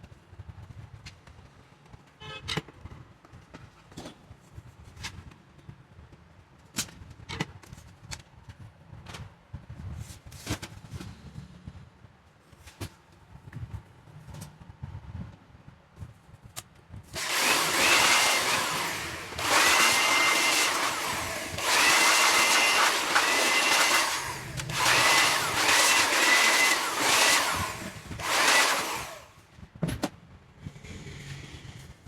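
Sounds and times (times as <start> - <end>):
electric motor tool whining: 17.2 - 29.4.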